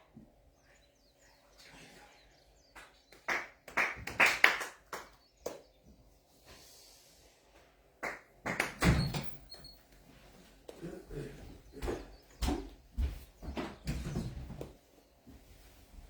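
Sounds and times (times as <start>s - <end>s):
sharp hand claps: 2.7s - 5.7s, 8.0s - 8.9s.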